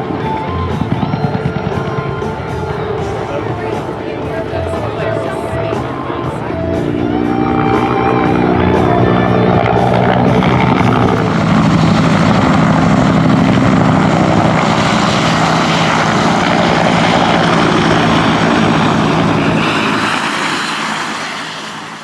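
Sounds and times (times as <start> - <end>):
helicopter rotor and turbine: 0.0 - 22.0.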